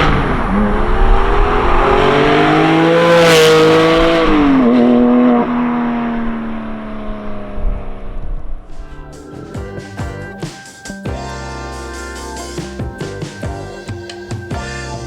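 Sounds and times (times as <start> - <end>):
car engine driving past: 0.0 - 9.3.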